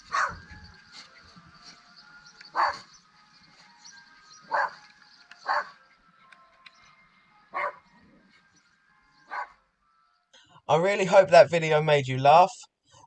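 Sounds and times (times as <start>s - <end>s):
small dog barking: 0.0s - 1.1s, 2.4s - 3.0s, 4.4s - 5.8s, 7.5s - 8.2s, 9.2s - 9.6s.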